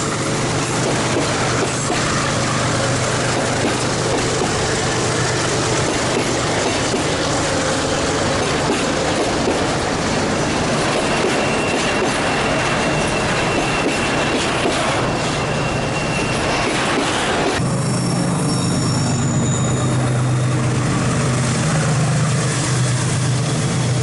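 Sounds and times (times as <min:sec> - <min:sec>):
train wheels clattering on rails: 0:00.0 - 0:17.6
high wheel squeal: 0:10.3 - 0:22.3.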